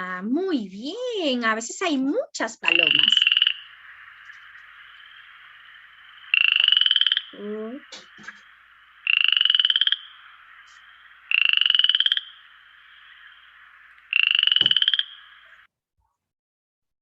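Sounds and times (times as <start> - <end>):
frog croaking: 2.6 - 15.7.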